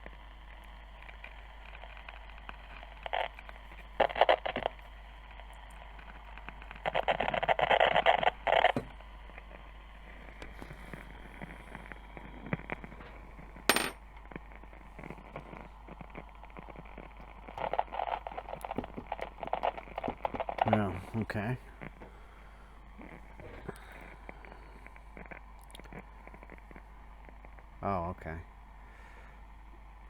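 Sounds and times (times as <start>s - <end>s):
radio crackling and popping: 0.0s - 28.4s
radio speaker hum and hiss: 0.0s - 30.0s.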